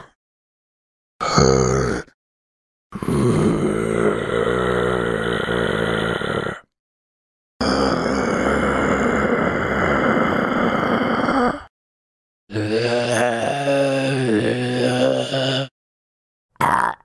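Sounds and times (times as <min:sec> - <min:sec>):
person growling like a zombie: 0:01.2 - 0:02.2, 0:03.0 - 0:06.7, 0:07.6 - 0:11.7, 0:12.5 - 0:15.8, 0:16.6 - 0:17.0.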